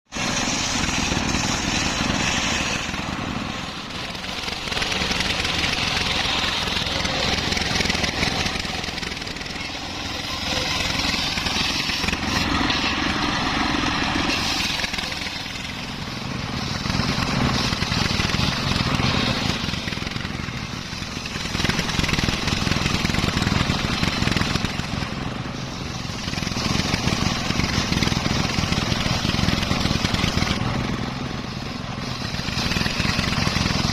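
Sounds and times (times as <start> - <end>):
circular sawmill cutting wood: 0.0 - 33.9.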